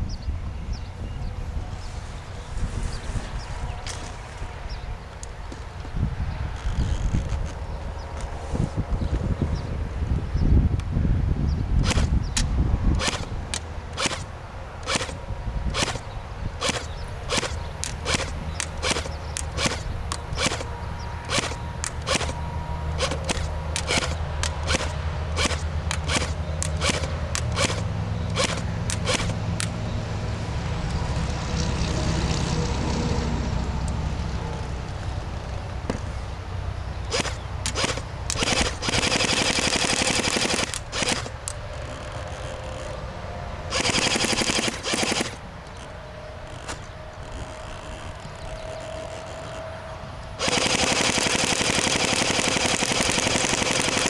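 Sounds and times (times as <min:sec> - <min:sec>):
airsoft gun firing: 0:14.0 - 0:20.7, 0:23.0 - 0:29.4, 0:37.1 - 0:41.4, 0:43.7 - 0:45.4, 0:50.4 - 0:54.0.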